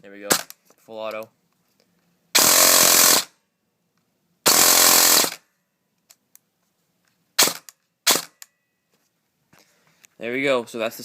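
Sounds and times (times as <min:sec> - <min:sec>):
airsoft gun full-auto bursts: 0:02.4 - 0:03.4, 0:04.4 - 0:05.4, 0:07.4 - 0:08.4.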